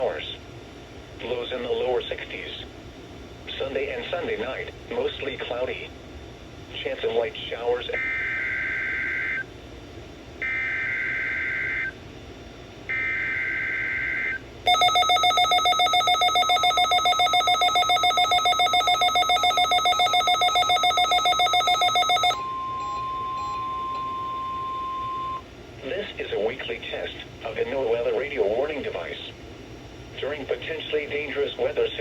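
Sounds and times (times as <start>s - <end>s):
steady warning tone: 6.8s - 25.6s
rapid pulsing alarm beeps: 7.9s - 9.5s, 10.4s - 12.0s, 12.9s - 25.4s
screeching data tones: 8.0s - 9.5s, 10.4s - 12.0s, 12.9s - 25.4s.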